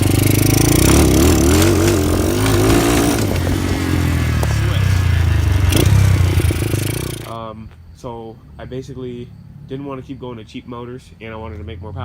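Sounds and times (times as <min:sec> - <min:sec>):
motorcycle engine revving: 0:00.0 - 0:07.4.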